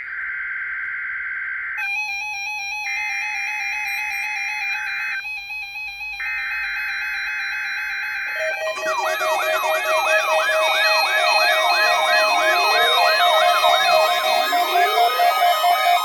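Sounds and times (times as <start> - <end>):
rapid siren-like wail: 3.1 - 16.0
steady synthesized tones: 8.4 - 16.0.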